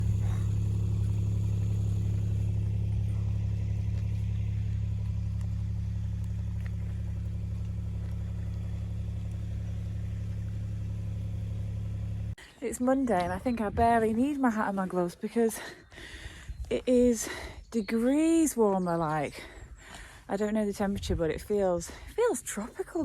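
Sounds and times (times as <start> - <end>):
vehicle engine running: 0.0 - 14.9.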